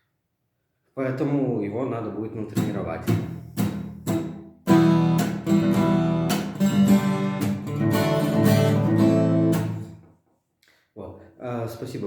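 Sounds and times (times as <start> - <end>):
acoustic guitar strummed: 3.1 - 10.0.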